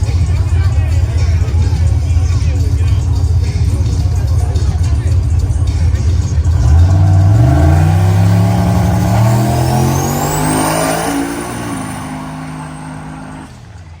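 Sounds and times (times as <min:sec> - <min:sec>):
car engine accelerating: 0:00.0 - 0:14.0
high whine: 0:06.4 - 0:13.6.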